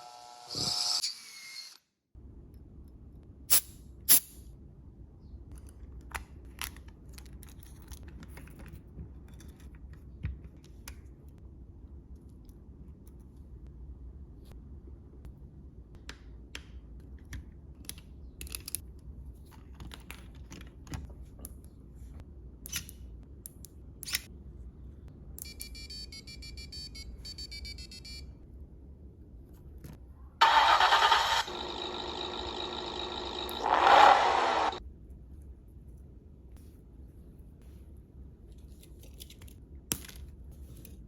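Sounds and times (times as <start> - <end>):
electronic beeps: 30.4 - 34.8
recorded car engine sound: 30.4 - 34.8.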